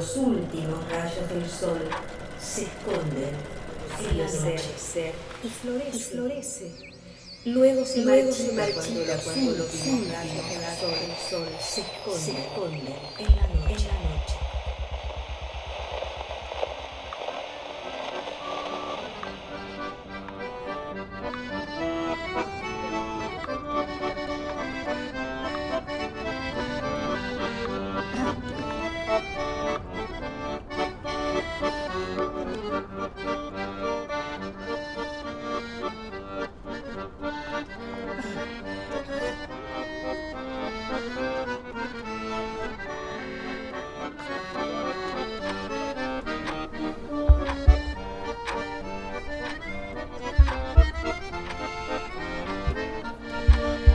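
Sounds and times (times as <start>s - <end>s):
instrumental music: 6.8s - 53.9s
loud low thumps: 13.2s - 17.4s, 46.2s - 53.9s.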